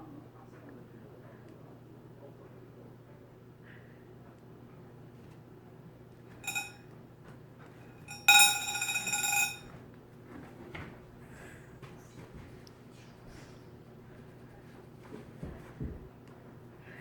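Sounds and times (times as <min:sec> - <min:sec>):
bright ringing clink: 0:06.4 - 0:06.8, 0:08.1 - 0:09.6.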